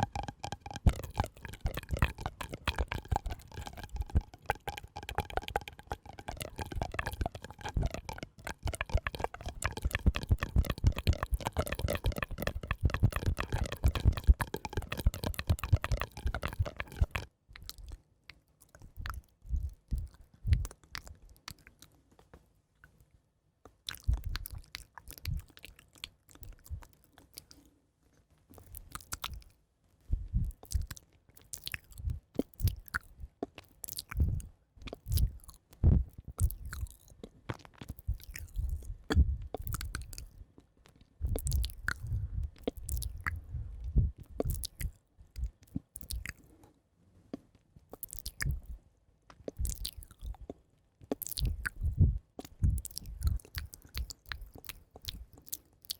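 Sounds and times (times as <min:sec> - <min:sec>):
soft low thumps: 0:00.0 - 0:17.2, 0:35.1 - 0:36.6, 0:38.1 - 0:39.8, 0:41.2 - 0:45.6, 0:51.4 - 0:53.4
wet mouth clicks and smacks: 0:00.0 - 0:22.0, 0:23.7 - 0:27.6, 0:28.6 - 0:29.6, 0:30.4 - 0:46.6, 0:47.3 - 0:55.9.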